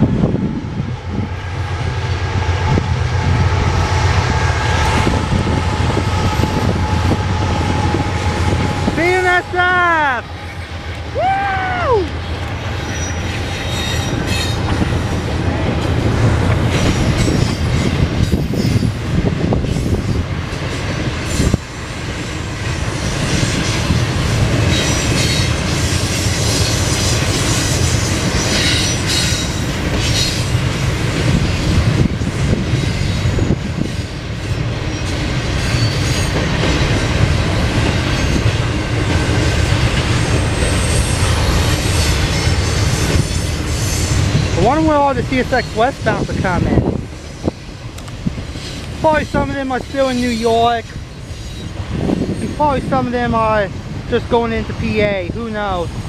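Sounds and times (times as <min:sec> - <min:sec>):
train wheels rumbling on rail: 0:00.0 - 0:56.0
high wheel squeal: 0:12.2 - 0:14.8, 0:16.8 - 0:19.0, 0:32.8 - 0:36.4, 0:39.7 - 0:44.4, 0:48.5 - 0:52.6.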